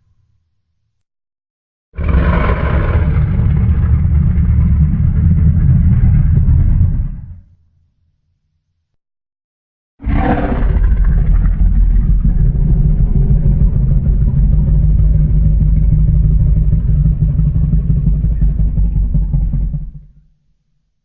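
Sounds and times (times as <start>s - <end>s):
deep steady rumble: 2.0s - 7.5s, 10.1s - 20.3s.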